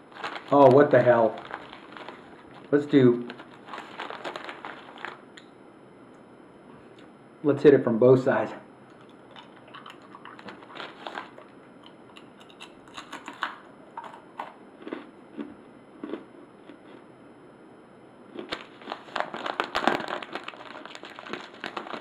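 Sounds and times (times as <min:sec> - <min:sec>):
crab shell crunching: 0:08.9 - 0:17.0.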